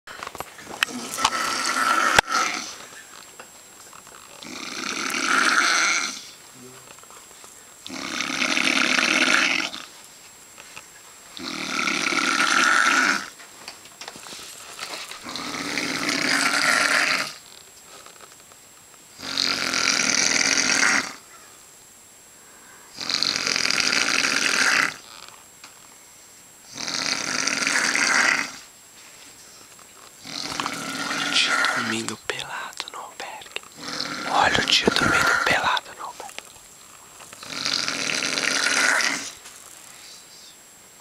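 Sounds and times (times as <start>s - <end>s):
man snoring loudly: 4.4s - 6.2s, 7.9s - 9.8s, 11.4s - 13.3s, 15.2s - 17.4s, 19.2s - 21.2s, 23.0s - 25.1s, 26.7s - 28.6s, 30.2s - 36.2s, 37.4s - 39.4s.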